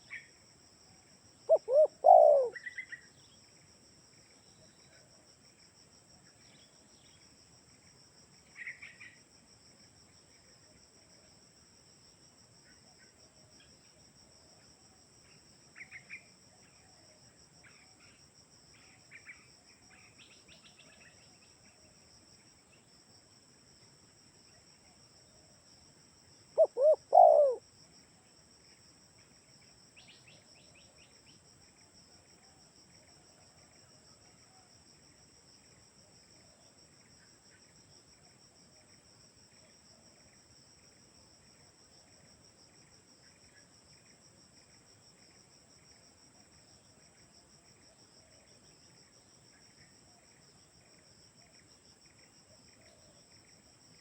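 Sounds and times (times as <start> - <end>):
dove cooing: 1.5 - 2.9, 26.6 - 27.6
small birds chirping: 1.5 - 3.4, 26.6 - 27.6
high insect trill: 26.2 - 32.1.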